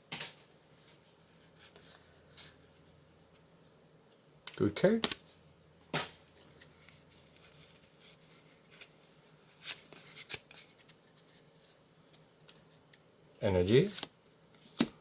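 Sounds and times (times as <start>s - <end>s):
trading cards flicking and rustling: 4.6s - 13.0s.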